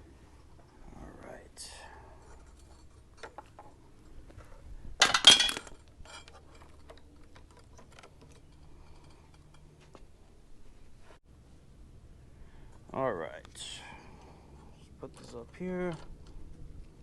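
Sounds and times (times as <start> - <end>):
metal tools clicking and tapping: 5.0 - 10.0.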